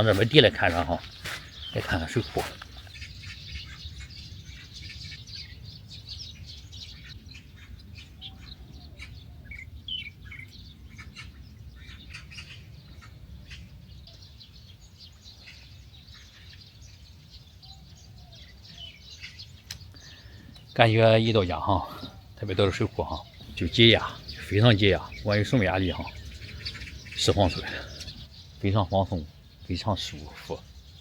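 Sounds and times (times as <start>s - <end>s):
small birds chirping: 0.0s - 31.0s
steady low rumble: 23.3s - 28.3s.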